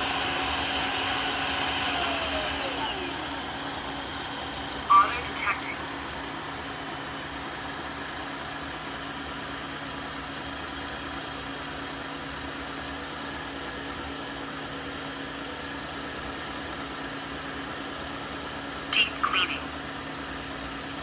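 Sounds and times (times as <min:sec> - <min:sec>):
floor vacuum motor whirring: 0:00.0 - 0:04.9.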